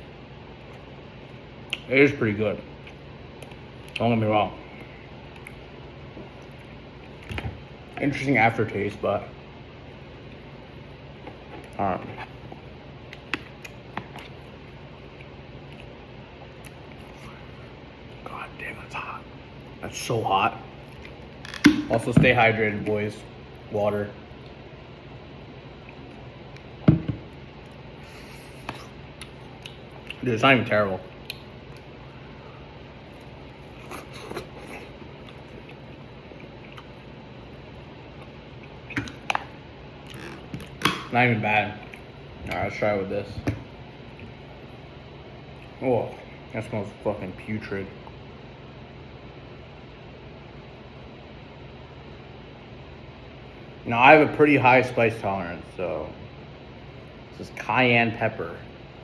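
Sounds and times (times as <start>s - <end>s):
steady low hum: 0.0s - 59.0s
person chewing: 11.2s - 17.4s, 33.1s - 37.1s.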